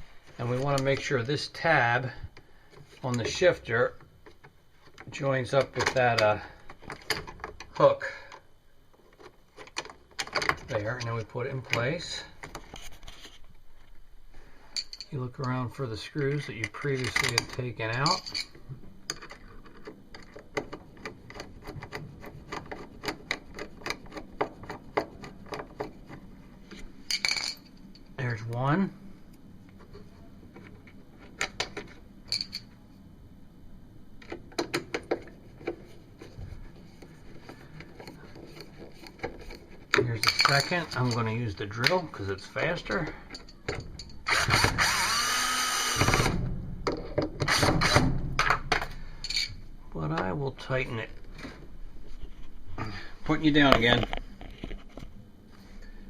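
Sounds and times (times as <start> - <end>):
power drill motor whine: 44.3 - 46.4.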